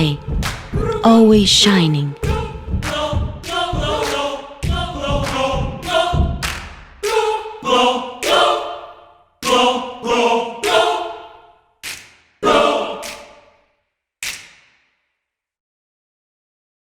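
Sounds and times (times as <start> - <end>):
voices singing short accented chords: 0.0 - 0.2, 0.8 - 6.4.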